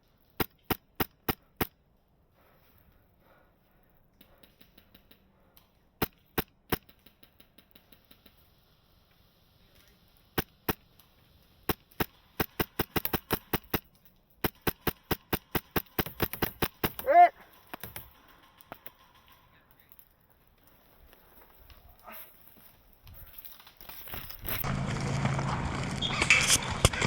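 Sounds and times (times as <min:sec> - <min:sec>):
airsoft gun shots: 0:11.7 - 0:18.1.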